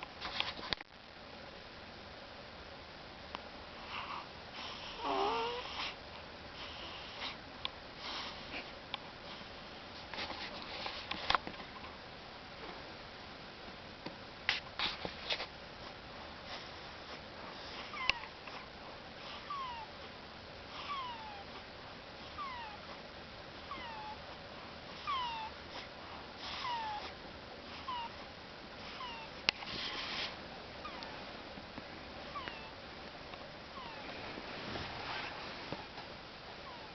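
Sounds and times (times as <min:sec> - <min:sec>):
baby snoring with squeaky whistle: 0:04.0 - 0:06.0, 0:19.3 - 0:19.9, 0:20.7 - 0:21.5, 0:22.4 - 0:22.9, 0:23.7 - 0:24.2, 0:25.0 - 0:25.8, 0:26.4 - 0:27.1, 0:27.8 - 0:28.2.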